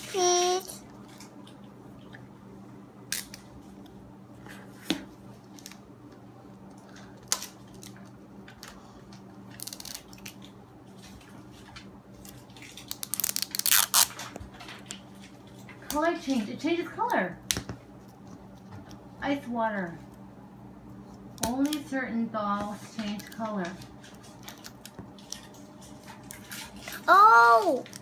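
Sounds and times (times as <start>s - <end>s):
plastic crinkling: 11.6s - 15.8s
plastic packaging crackling: 12.2s - 14.9s.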